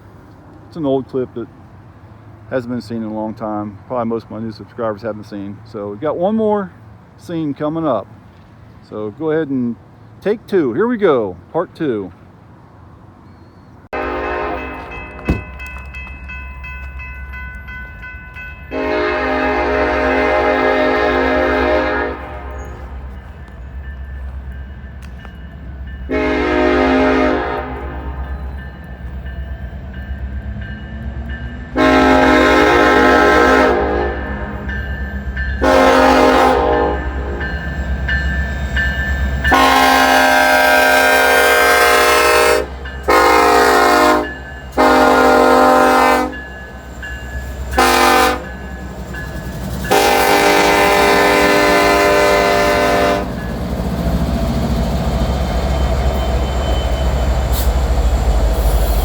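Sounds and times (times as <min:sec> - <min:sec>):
train rumbling: 0:00.0 - 0:59.0
locomotive air horn blasts: 0:14.0 - 0:15.0, 0:18.7 - 0:23.0, 0:26.1 - 0:28.4, 0:31.7 - 0:34.7, 0:35.6 - 0:37.5, 0:39.5 - 0:46.4, 0:47.7 - 0:48.6, 0:49.9 - 0:53.3.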